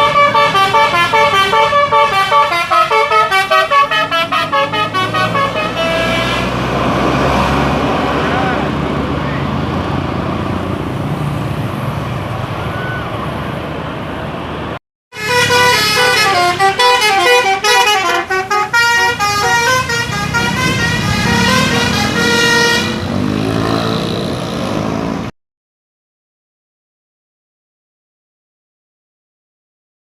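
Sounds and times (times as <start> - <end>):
musical air horn melody: 0.0 - 6.6, 15.1 - 23.2
bus engine: 0.0 - 25.4
road noise: 0.0 - 25.4.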